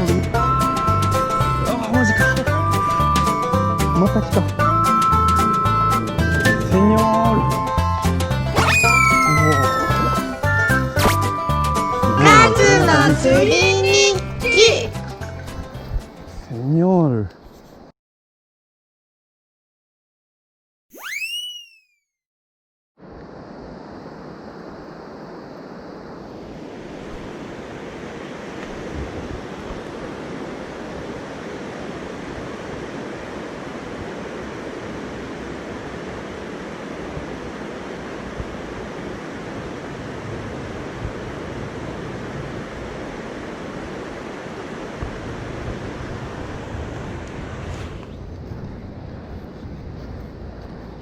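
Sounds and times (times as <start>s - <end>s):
stream water rushing: 7.6s - 15.6s, 23.0s - 48.0s
wind rumble on microphone: 15.0s - 16.6s, 23.0s - 51.0s.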